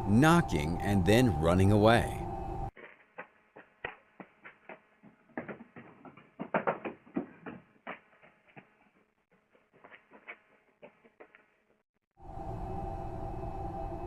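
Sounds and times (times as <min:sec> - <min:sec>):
quick footsteps: 0:02.8 - 0:11.8.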